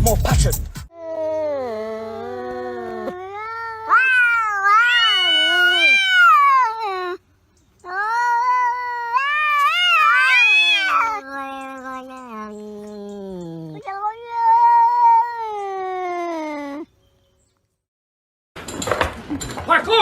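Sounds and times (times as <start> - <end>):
cat yowling: 1.0 - 7.2, 7.8 - 16.9.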